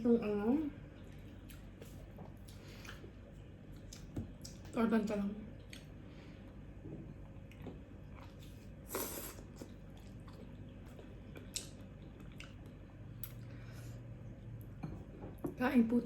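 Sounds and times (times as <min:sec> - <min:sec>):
person chewing food: 0:00.9 - 0:04.7, 0:05.5 - 0:14.8.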